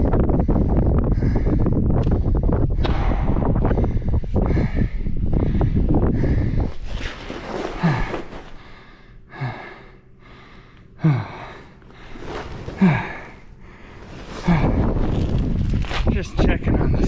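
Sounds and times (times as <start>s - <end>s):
man breathing heavily: 0.0s - 16.2s.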